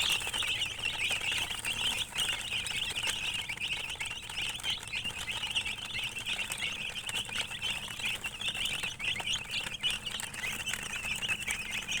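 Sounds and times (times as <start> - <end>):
chicks peeping: 0.0 - 12.0.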